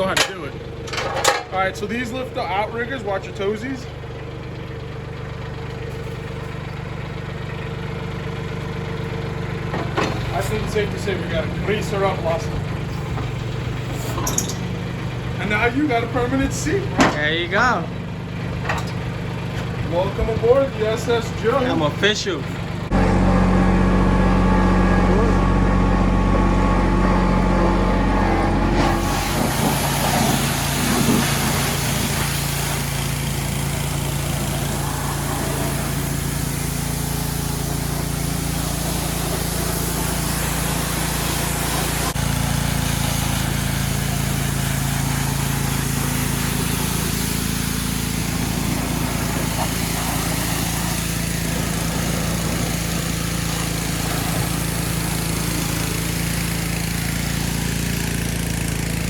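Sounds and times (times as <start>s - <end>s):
tractor diesel engine running: 0.0s - 59.0s.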